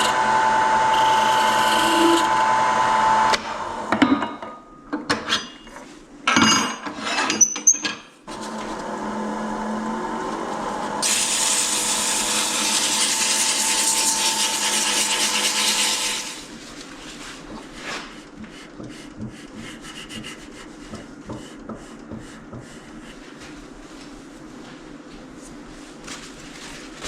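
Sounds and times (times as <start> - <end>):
wood lathe humming: 0.0 - 3.9, 8.3 - 16.5
scraping strokes on wood: 8.3 - 16.5, 17.6 - 23.3.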